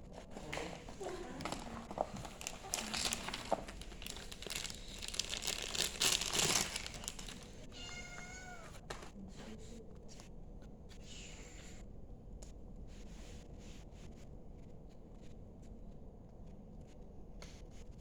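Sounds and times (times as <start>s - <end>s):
packaging crinkling: 0.3s - 8.0s
cat meowing: 7.6s - 8.8s.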